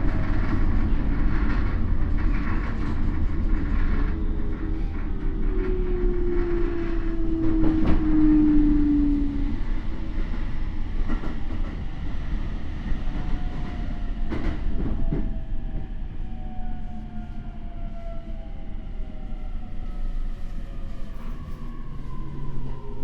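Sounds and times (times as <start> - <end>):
train rumble: 0.0 - 23.0.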